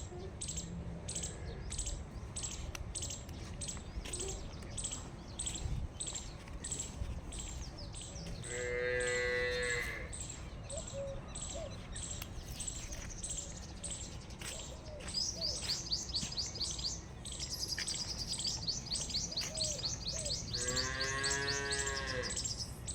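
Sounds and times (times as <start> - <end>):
small birds chirping: 0.0 - 22.9
cattle mooing: 20.6 - 22.4.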